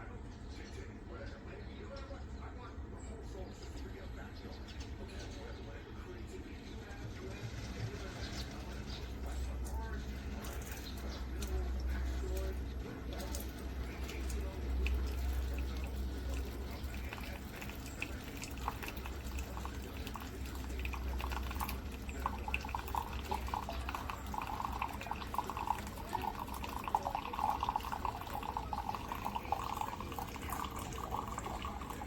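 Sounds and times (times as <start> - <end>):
drips: 6.2 - 32.0
liquid filling a cup: 7.1 - 32.0
coffee maker dispensing: 18.5 - 32.0.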